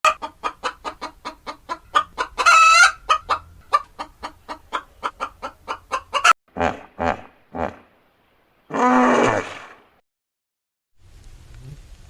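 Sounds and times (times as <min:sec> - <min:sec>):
chicken clucking: 0:00.1 - 0:06.4
chicken squawk: 0:00.1 - 0:07.7.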